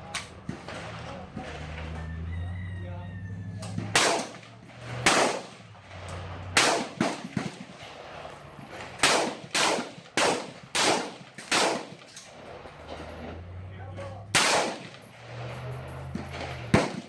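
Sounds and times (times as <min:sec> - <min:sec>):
rifle gunshots: 0:03.7 - 0:13.0, 0:14.3 - 0:17.0.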